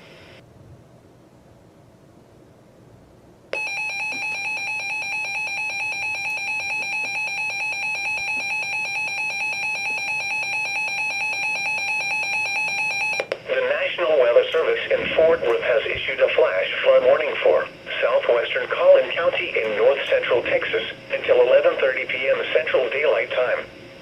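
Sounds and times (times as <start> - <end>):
piercing two-tone alert signal: 3.6 - 13.3.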